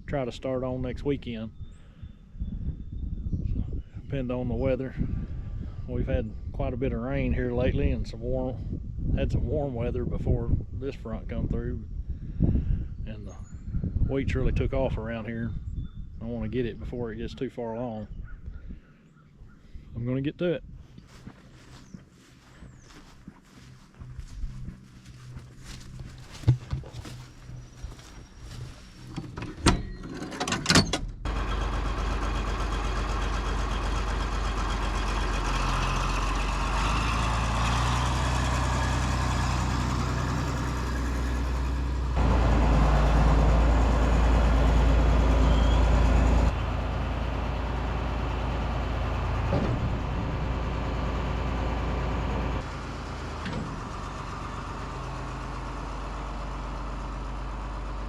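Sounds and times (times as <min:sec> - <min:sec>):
tractor diesel engine running: 0:20.9 - 0:58.0.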